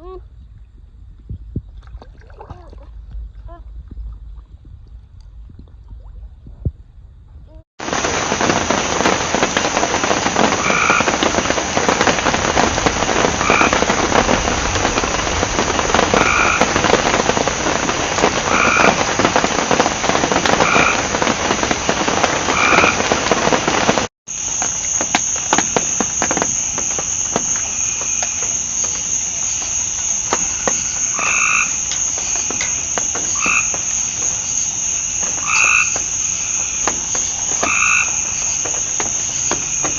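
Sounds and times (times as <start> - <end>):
insect drone: 6.0 - 39.9
frog calling: 10.5 - 11.4, 13.3 - 14.4, 15.0 - 17.5, 18.4 - 19.3, 20.4 - 21.2, 22.5 - 23.1, 24.3 - 39.9.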